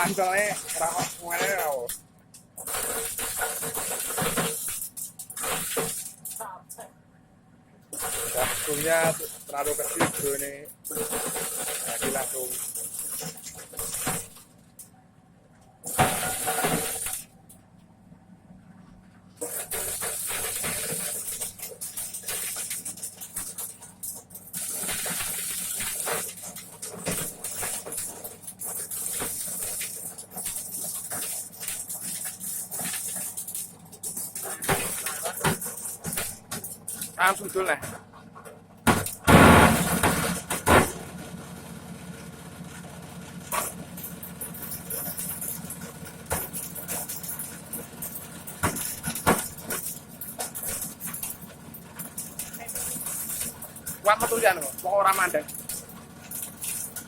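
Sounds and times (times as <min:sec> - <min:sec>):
corn sheller machine running: 0:00.0 - 0:06.9, 0:07.9 - 0:14.8, 0:15.8 - 0:17.6, 0:19.4 - 0:57.0
clicks of corn being fed: 0:08.0 - 0:14.3, 0:43.5 - 0:57.0.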